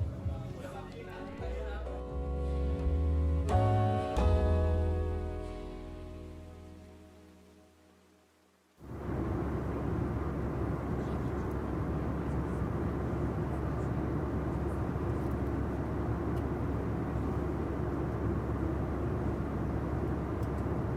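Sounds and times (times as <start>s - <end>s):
vehicle rumble: 8.8s - 20.9s.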